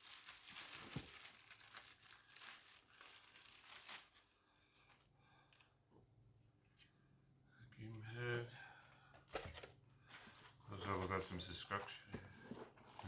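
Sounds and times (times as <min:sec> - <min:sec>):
packaging crinkling: 0:00.0 - 0:05.6.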